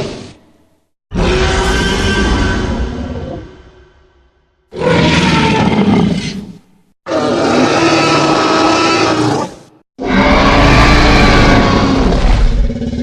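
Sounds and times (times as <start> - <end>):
dinosaur roars: 7.1 - 13.0.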